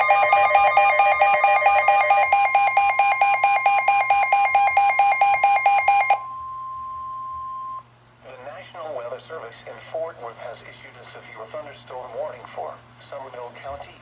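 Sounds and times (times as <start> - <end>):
rapid electronic beeping: 0.0 - 6.2
steady alarm tone: 0.0 - 7.8.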